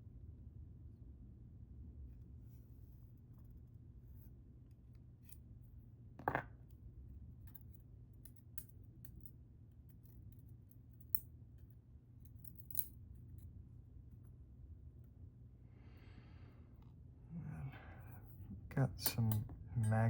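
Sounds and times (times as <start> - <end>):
metal lock parts clicking and tapping: 12.3 - 13.0.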